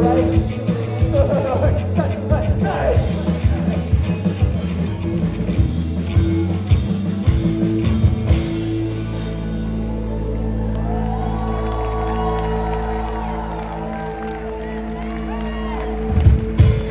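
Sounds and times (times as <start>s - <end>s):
drums pounding: 0.0s - 9.7s, 16.0s - 16.9s
live rock band playing: 0.0s - 11.0s, 13.8s - 16.9s.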